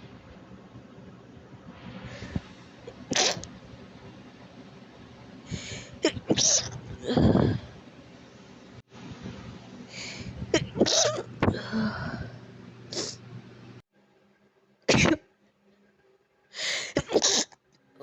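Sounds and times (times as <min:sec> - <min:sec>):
person sneezing: 0:02.9 - 0:03.5, 0:06.1 - 0:07.6, 0:10.6 - 0:11.3, 0:14.9 - 0:15.2, 0:16.8 - 0:17.5
breathing before sneezes: 0:16.6 - 0:17.0.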